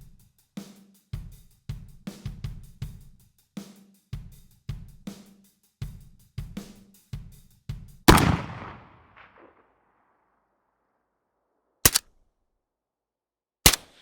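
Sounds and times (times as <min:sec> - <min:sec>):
short double gunshot crack: 0:08.1 - 0:09.4
rifle shot with echo: 0:08.1 - 0:09.6, 0:13.7 - 0:14.0.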